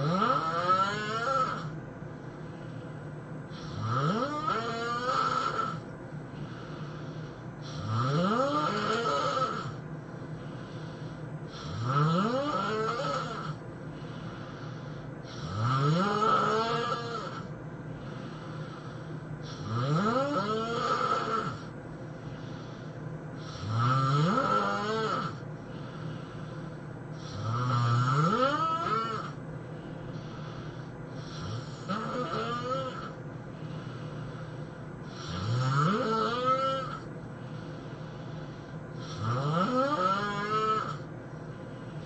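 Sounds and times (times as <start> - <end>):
person snoring loudly: 0.0 - 1.8, 3.5 - 5.8, 7.6 - 9.8, 11.5 - 13.6, 15.2 - 17.5, 18.1 - 21.7, 23.4 - 25.9, 27.2 - 29.4, 31.2 - 33.2, 35.0 - 37.1, 39.0 - 41.1
low steady hum: 0.0 - 42.0.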